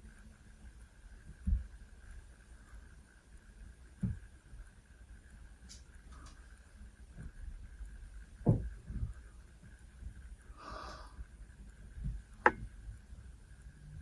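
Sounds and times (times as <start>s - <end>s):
soft low thumps: 1.3s - 1.8s, 8.2s - 10.2s.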